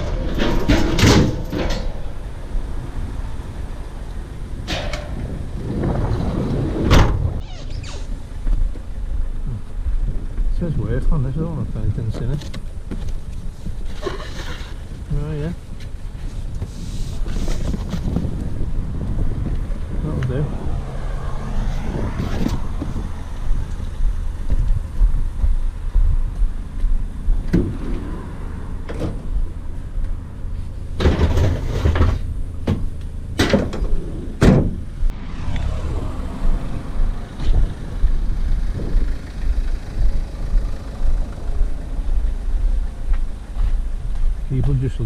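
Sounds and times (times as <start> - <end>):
metal clanks and knocks: 0.0 - 2.2, 4.6 - 5.3, 31.0 - 34.8
vehicle engine rumbling: 0.0 - 45.0.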